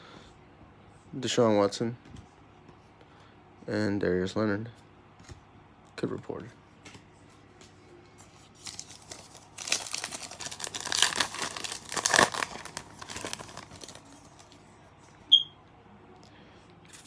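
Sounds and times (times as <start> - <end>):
wrapper crinkling: 8.4 - 14.6.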